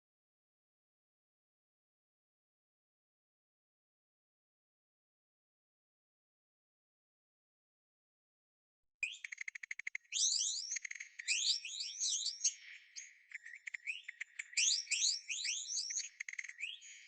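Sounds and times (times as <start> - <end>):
bird dry ticks: 9.1 - 10.2
bird high rising chirps: 10.1 - 17.0.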